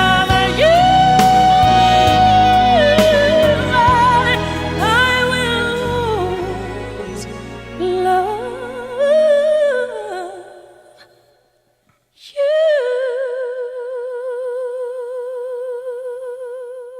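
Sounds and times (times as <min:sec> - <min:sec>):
soft backing music: 0:00.0 - 0:10.6
person singing slow melody: 0:00.0 - 0:11.3.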